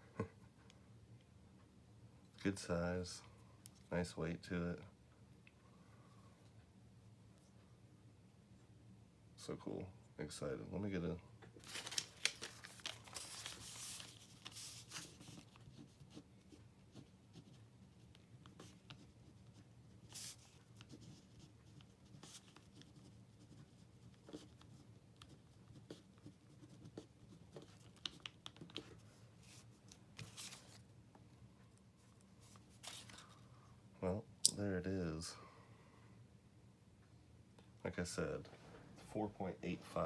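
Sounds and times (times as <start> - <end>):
low room hum: 0.0 - 40.0
rustling: 11.6 - 15.6.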